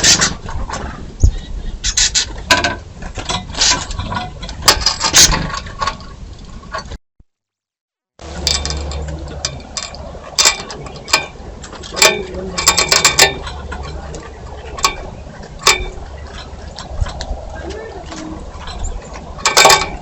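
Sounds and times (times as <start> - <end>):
birds clicking at feeder: 8.2 - 20.0
steady low hum: 8.2 - 20.0.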